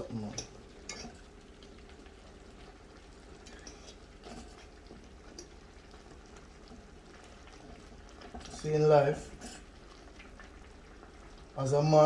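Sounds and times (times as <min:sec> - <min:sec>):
pot simmering: 0:00.0 - 0:12.0.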